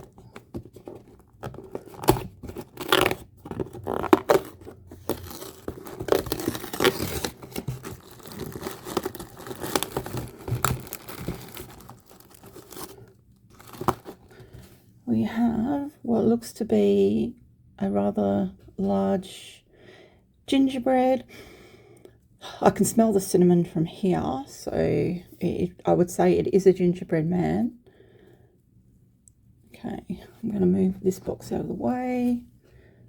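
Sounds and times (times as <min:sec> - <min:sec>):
cardboard tearing: 0:00.0 - 0:14.3.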